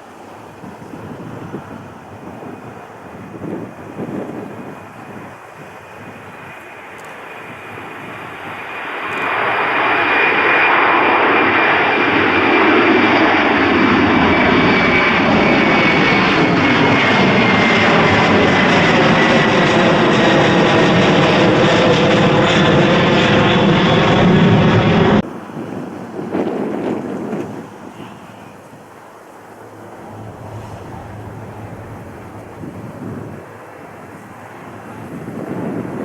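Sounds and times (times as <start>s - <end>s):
jet airliner passing: 0.2s - 36.0s
high fan whine: 24.3s - 36.0s.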